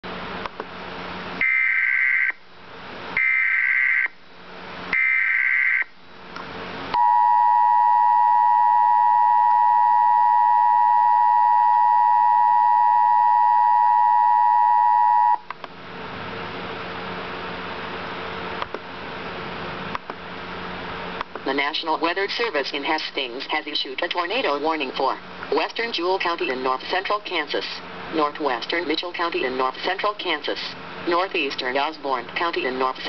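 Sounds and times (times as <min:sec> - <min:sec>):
two-tone attention signal: 0:07.0 - 0:15.4.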